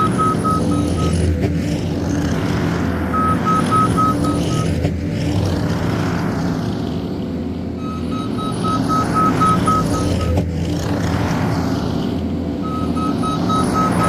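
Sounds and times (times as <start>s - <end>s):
back-up alarm beeping: 0.0s - 1.3s, 3.1s - 4.8s, 7.8s - 10.4s, 12.6s - 14.0s
diesel engine running: 0.0s - 14.0s.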